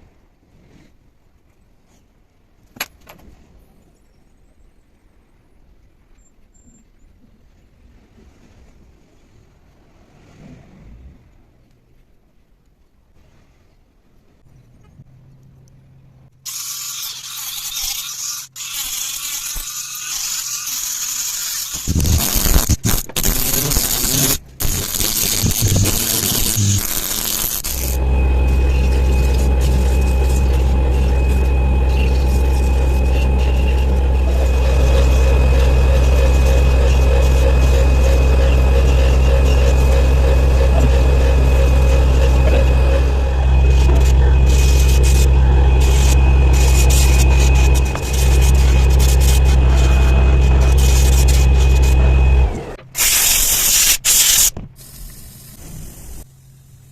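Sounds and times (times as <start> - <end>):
compressed air hissing: 21.3 - 52.0, 53.0 - 56.3
electric machine humming and whining: 21.8 - 53.8.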